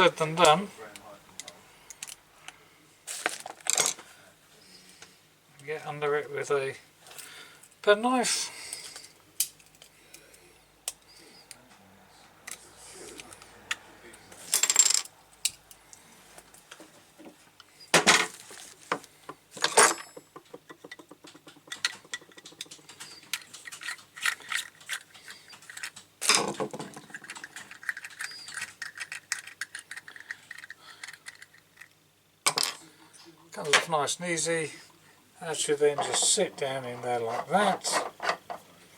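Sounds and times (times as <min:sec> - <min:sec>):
metal tools clinking and scraping: 0:14.4 - 0:15.7, 0:19.6 - 0:30.7, 0:35.6 - 0:38.6.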